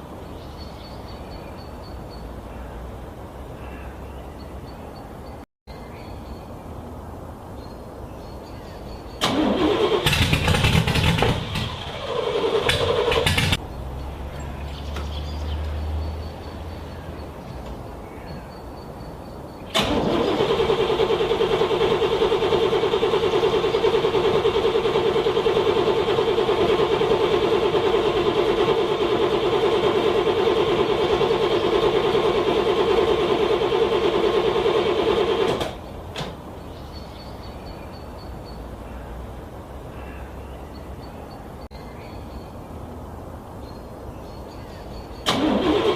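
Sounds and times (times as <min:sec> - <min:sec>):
car engine cranking: 0:09.2 - 0:13.8, 0:19.7 - 0:36.2, 0:45.2 - 0:45.9.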